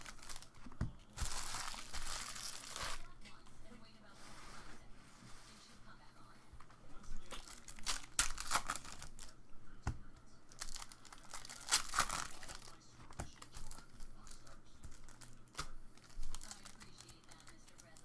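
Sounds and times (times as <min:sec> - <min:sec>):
foil wrappers crinkling and tearing: 0:00.0 - 0:03.1, 0:07.2 - 0:09.4, 0:10.5 - 0:18.0.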